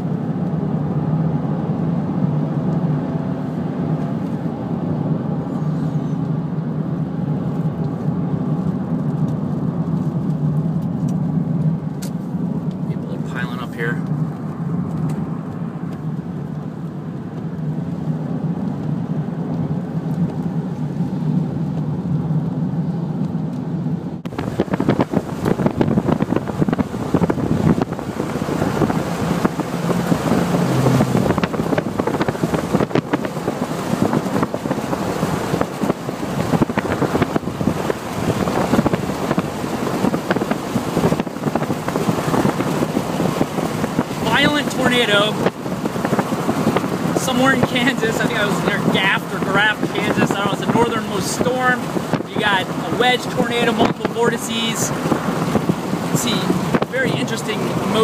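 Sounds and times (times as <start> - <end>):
car road and engine noise: 0.0 - 58.0
wind buffeting microphone: 24.2 - 58.0.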